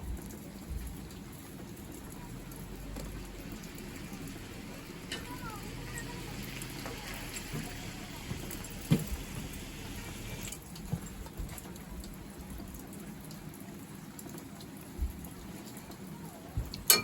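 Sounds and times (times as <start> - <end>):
rain falling: 0.0 - 17.0
water drips: 0.0 - 17.0.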